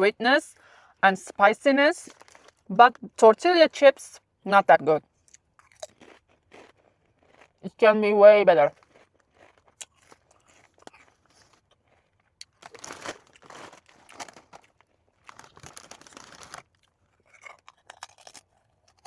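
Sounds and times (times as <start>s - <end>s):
plastic packaging crunching: 2.0s - 2.7s, 8.7s - 19.0s.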